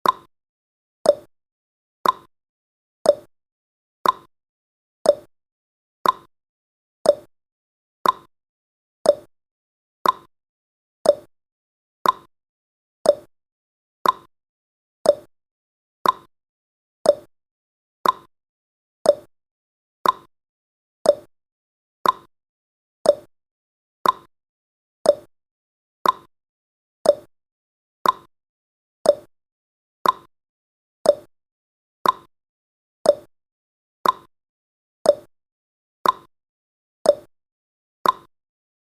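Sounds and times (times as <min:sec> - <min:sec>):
clock ticking: 0:02.0 - 0:02.3, 0:06.0 - 0:06.3, 0:08.0 - 0:08.3, 0:10.0 - 0:10.3, 0:12.0 - 0:12.3, 0:13.1 - 0:13.3, 0:14.0 - 0:14.3, 0:15.1 - 0:15.3, 0:16.0 - 0:16.3, 0:18.0 - 0:18.3, 0:20.0 - 0:20.3, 0:22.0 - 0:22.3, 0:24.0 - 0:24.3, 0:25.1 - 0:25.3, 0:26.0 - 0:26.3, 0:27.1 - 0:27.3, 0:28.0 - 0:28.3, 0:29.1 - 0:29.3, 0:30.0 - 0:30.3, 0:32.0 - 0:32.3, 0:33.1 - 0:33.3, 0:34.0 - 0:34.3, 0:36.0 - 0:36.3, 0:38.0 - 0:38.3.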